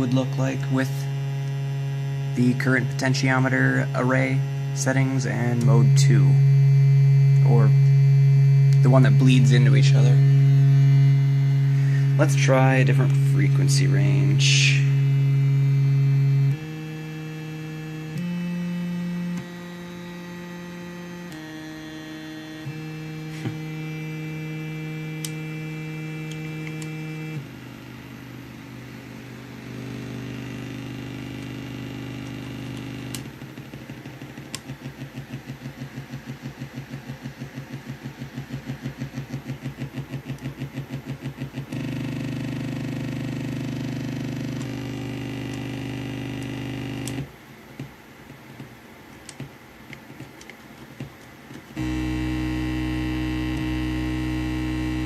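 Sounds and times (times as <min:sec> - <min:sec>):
buzzy electronic tone: 0:00.0 - 0:47.3, 0:51.8 - 0:55.0
faint hum: 0:00.0 - 0:55.0
clicks: 0:25.1 - 0:25.4, 0:26.2 - 0:27.4, 0:31.4 - 0:55.0.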